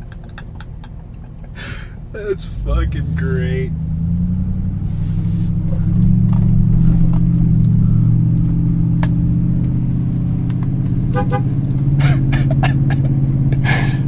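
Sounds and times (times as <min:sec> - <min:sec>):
car engine and road noise: 0:00.0 - 0:14.0
car horn toot: 0:11.1 - 0:12.3.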